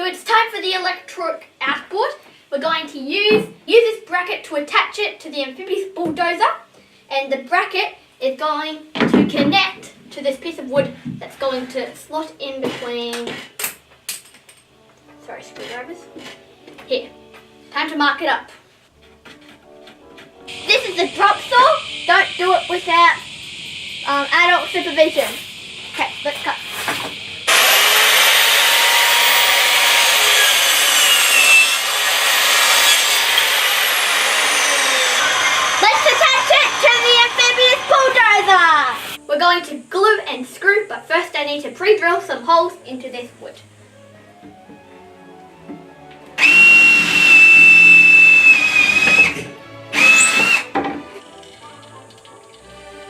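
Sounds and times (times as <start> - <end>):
quiet background music: 9.4 - 23.4, 38.0 - 46.4, 48.9 - 53.0
mitre saw cutting wood: 19.0 - 22.9, 26.8 - 39.2, 46.4 - 51.8
power drill boring into wood: 27.4 - 39.2, 46.4 - 50.8.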